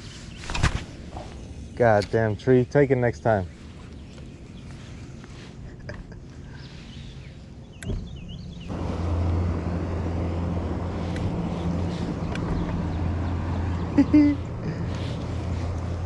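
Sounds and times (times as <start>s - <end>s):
boat motor running: 7.9s - 16.0s.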